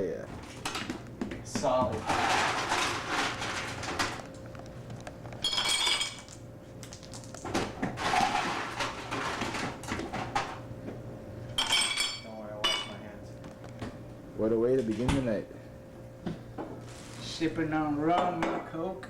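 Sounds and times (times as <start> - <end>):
faint hum: 0.0 - 19.0
glasses and bottles clinking: 5.4 - 6.3, 11.6 - 13.0.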